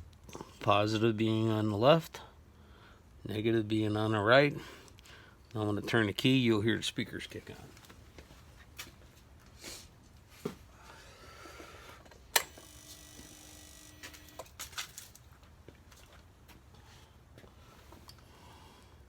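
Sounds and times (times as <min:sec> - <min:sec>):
fuel pump whine: 0:12.4 - 0:14.5.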